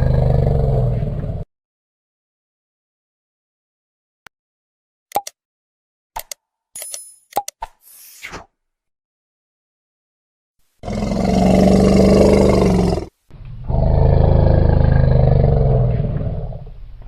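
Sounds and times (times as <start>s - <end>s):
elephant roaring: 0.0s - 1.4s, 10.8s - 16.8s.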